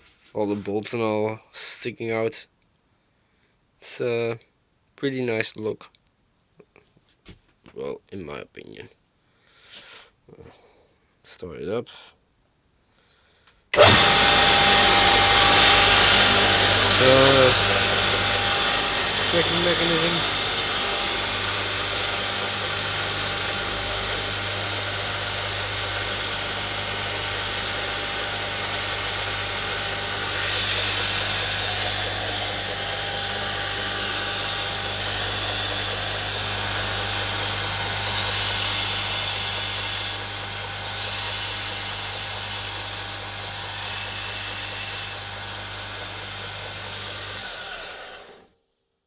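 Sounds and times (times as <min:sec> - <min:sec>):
belt grinder running: 0:13.8 - 0:48.5.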